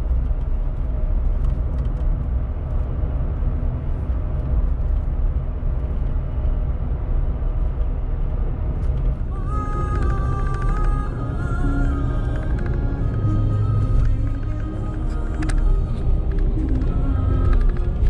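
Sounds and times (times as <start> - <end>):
car road and engine rumble: 0.0 - 18.0
music: 9.2 - 18.0.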